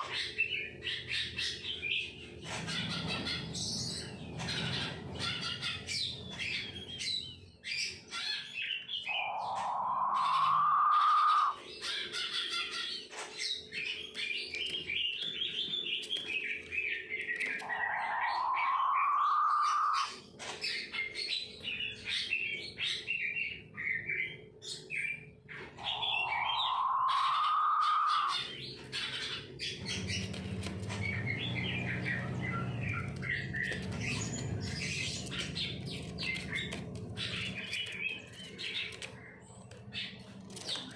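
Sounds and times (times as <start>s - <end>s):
quail long rising call: 9.1s - 11.6s, 17.6s - 20.1s, 25.8s - 28.4s.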